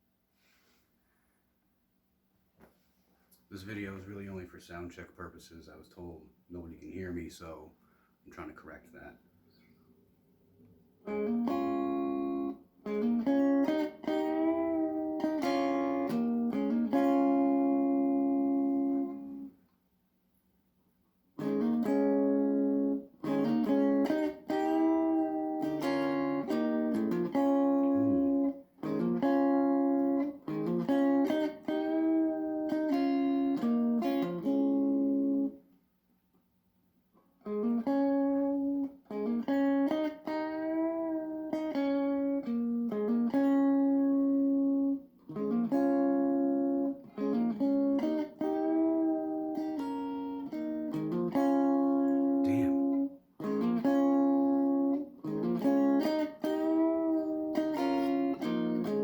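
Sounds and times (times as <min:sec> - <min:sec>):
instrumental melody of held notes: 0:23.6 - 0:28.6.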